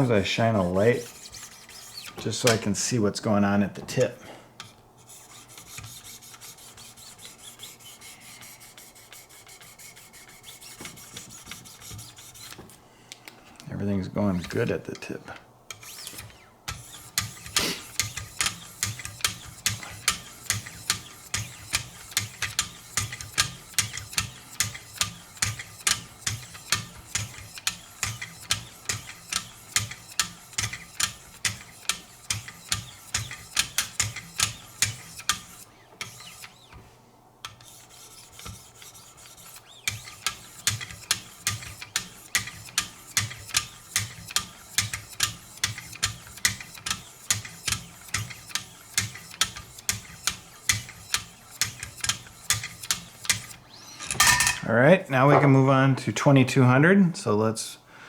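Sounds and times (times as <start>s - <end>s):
sharpening stone rasping on knife: 1.0s - 2.2s.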